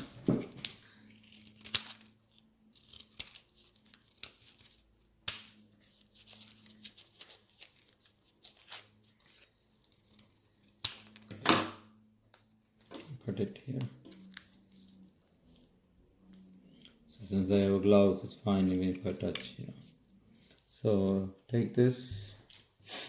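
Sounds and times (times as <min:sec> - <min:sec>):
plastic packaging tearing and crinkling: 0:00.5 - 0:11.5, 0:12.6 - 0:15.6.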